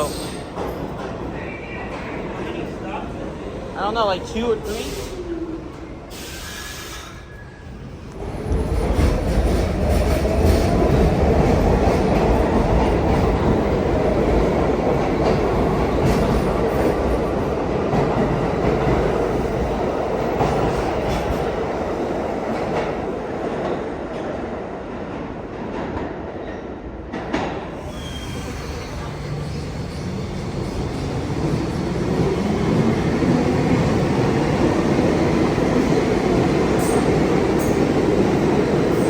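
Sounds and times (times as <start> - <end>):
train rumble: 7.6 - 26.2.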